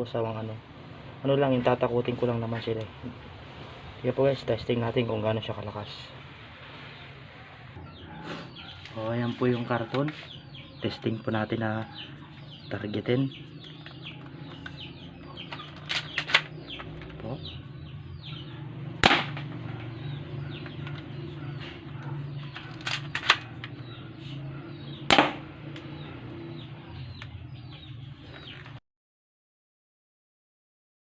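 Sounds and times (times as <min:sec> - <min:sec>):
chickens clucking: 0:07.8 - 0:19.0, 0:19.6 - 0:22.8
chicks peeping: 0:07.8 - 0:19.0, 0:19.6 - 0:22.8, 0:23.4 - 0:25.1.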